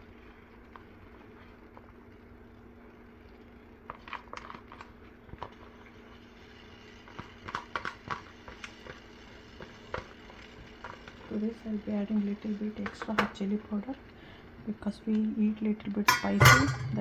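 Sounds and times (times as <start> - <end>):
steady low hum: 16.0 - 17.0
metal spoon scraping a pan: 16.1 - 17.0.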